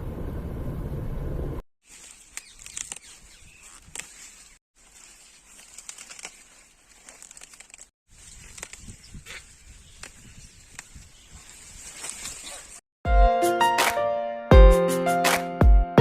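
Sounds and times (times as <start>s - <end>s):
crinkling handling noise: 1.8s - 12.8s.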